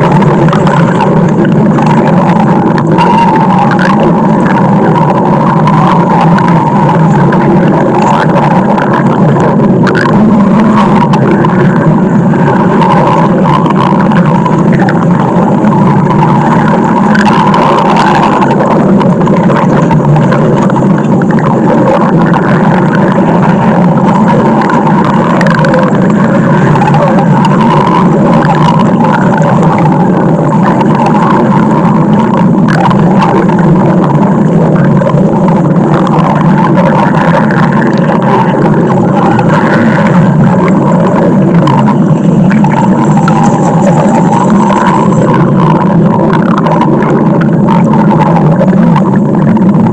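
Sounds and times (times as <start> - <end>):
stomach growling: 0.0 - 49.9.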